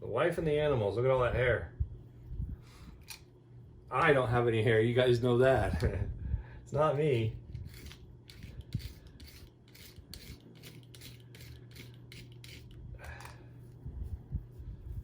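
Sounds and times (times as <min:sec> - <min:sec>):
steady low hum: 0:00.0 - 0:15.0
hair being cut and scraped: 0:07.5 - 0:12.8.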